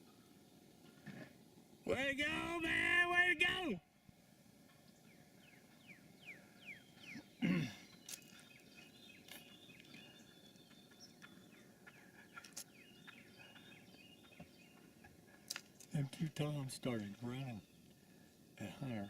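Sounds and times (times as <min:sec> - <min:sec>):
birds whistling calls: 0:05.0 - 0:15.5.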